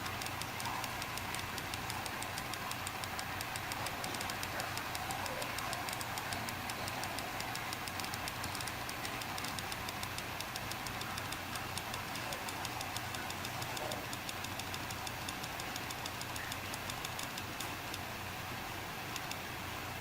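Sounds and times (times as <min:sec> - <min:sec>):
hard drive ticking: 0:00.0 - 0:20.0
steady low hum: 0:00.0 - 0:20.0.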